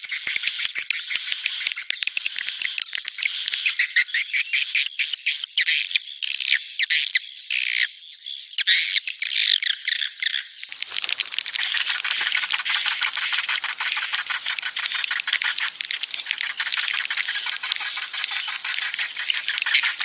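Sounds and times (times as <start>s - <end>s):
swiftlet twittering and chirping: 9.0s - 20.0s
fast clicking with high whistle: 10.7s - 20.0s.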